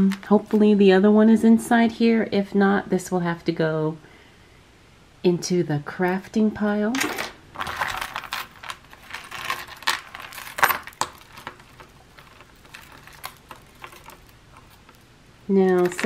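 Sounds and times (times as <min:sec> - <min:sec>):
jewelry clinking and rattling: 0:06.9 - 0:16.0
rustling: 0:07.6 - 0:16.0.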